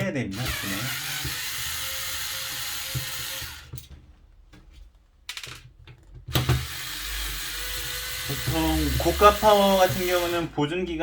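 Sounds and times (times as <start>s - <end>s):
electric screwdriver running: 0.4s - 3.7s, 6.4s - 10.5s.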